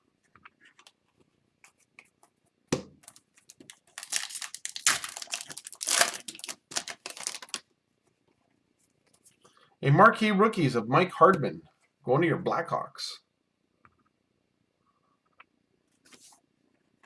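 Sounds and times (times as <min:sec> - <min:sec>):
foil wrapper crinkling and tearing: 0:03.0 - 0:07.6.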